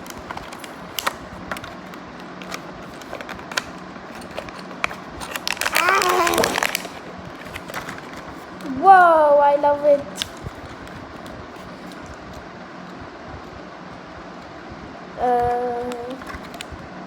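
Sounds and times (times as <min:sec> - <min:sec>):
packaging clicks and crackles: 0:00.0 - 0:08.7, 0:15.5 - 0:16.7
packaging rustling and squeaking: 0:00.0 - 0:09.0.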